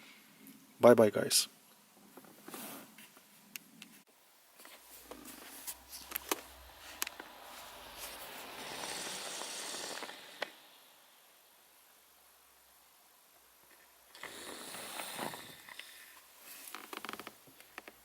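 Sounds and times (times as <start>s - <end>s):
rustling hiss: 2.2s - 11.7s, 14.1s - 18.0s.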